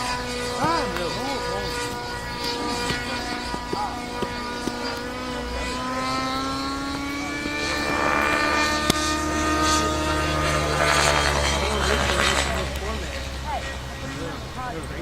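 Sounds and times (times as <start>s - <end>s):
helicopter engine and rotor whine: 0.0s - 15.0s.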